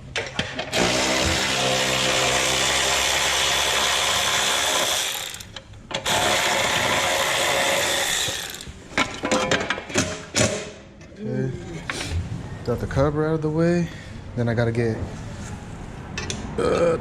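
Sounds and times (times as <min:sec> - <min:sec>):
power tool driving bolts: 0:00.1 - 0:10.8.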